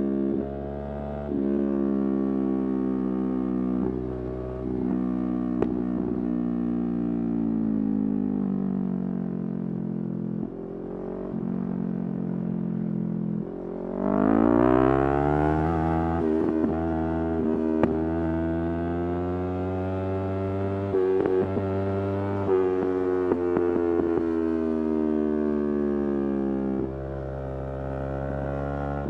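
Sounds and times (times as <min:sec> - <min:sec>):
motorcycle engine revving: 0:13.3 - 0:24.8.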